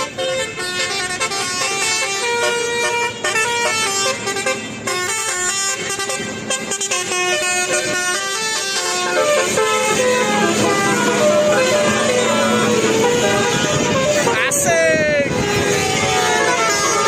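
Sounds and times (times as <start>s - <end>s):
multi-tone air horn tune: 0.0s - 17.0s.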